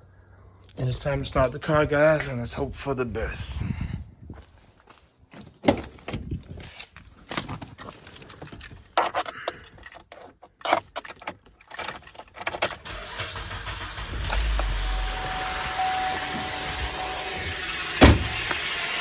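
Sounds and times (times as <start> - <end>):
keys jangling: 4.9 - 15.6.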